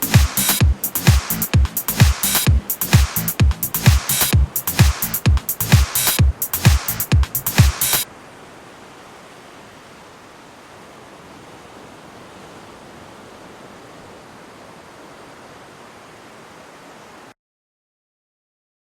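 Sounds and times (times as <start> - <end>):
steady hiss: 0.0 - 8.1.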